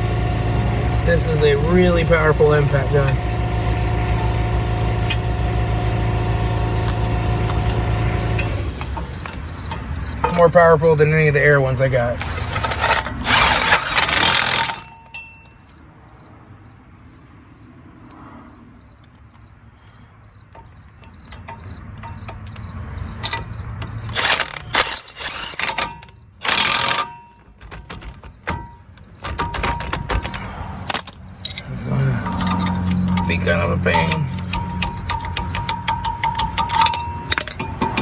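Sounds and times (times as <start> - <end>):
impact wrench hammering: 0.0 - 10.6, 23.3 - 31.6, 32.2 - 38.0
tool handling clicks: 20.5 - 38.0.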